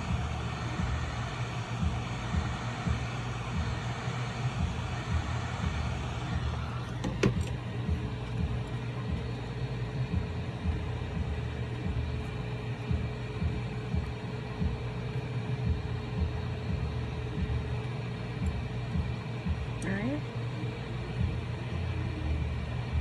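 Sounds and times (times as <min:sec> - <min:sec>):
heat gun blowing air: 0:00.0 - 0:07.4.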